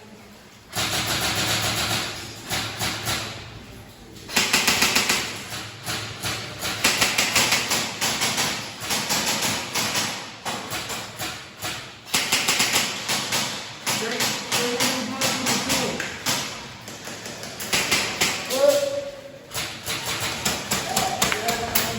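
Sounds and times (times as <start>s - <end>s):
airsoft guns automatic bursts: 4.3s - 16.4s.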